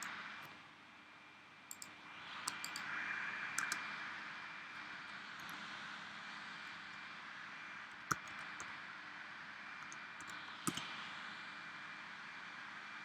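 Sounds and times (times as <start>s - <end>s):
mouse and keyboard clicks: 1.7s - 1.9s, 2.5s - 2.9s, 3.6s - 3.8s, 8.1s - 8.7s, 9.8s - 10.9s.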